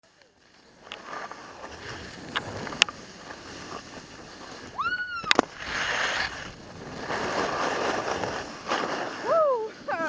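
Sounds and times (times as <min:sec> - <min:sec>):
skis sliding over snow: 0:00.0 - 0:10.0
high-pitched whoop: 0:04.7 - 0:05.5.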